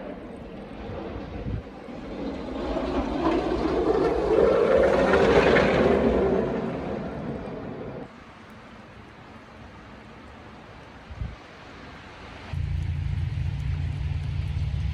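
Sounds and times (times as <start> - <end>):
vehicle passing: 0.8 - 8.1.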